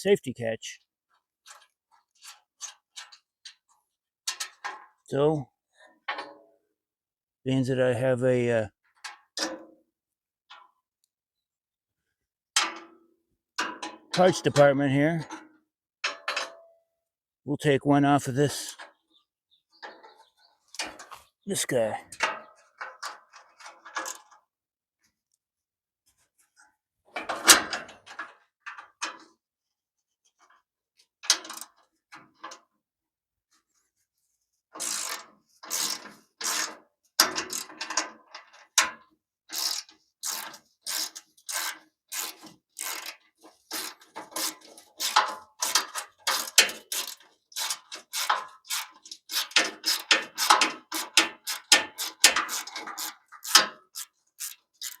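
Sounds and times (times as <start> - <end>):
ratchet wrench clicking: 34.8 - 36.7, 39.5 - 43.2, 43.8 - 55.0.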